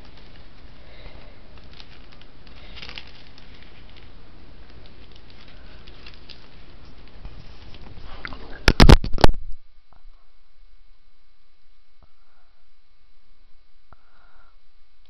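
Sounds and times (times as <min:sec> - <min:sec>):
plastic bag crinkling: 0:00.0 - 0:09.6
steady background hiss: 0:00.0 - 0:15.0.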